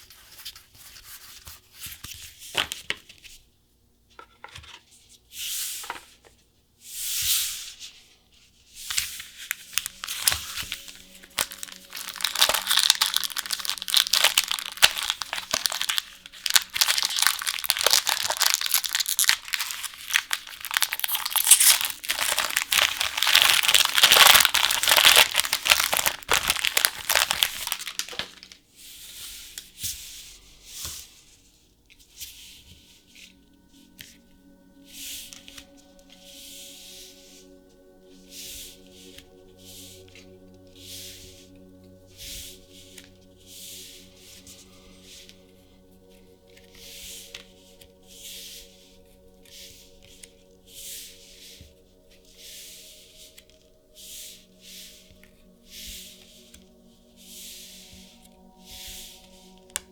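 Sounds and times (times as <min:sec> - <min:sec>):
packaging wrapper crinkling and tearing: 0:09.5 - 0:28.6.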